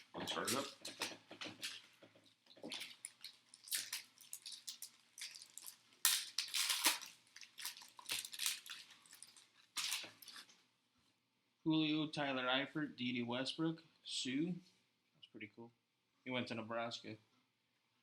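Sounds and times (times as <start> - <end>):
card pack wrapper crinkling: 0.0 - 1.0, 2.5 - 10.5
cards rustling: 0.0 - 2.0, 2.6 - 10.5.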